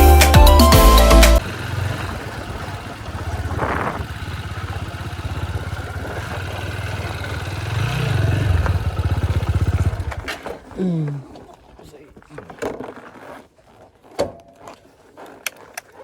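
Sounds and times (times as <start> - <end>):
motorcycle engine running: 0.0 - 11.1.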